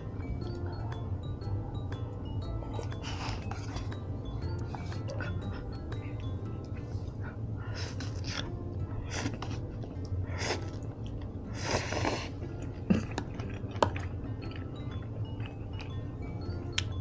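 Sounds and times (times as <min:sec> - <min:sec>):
chewing and slurping food: 0:07.8 - 0:16.0.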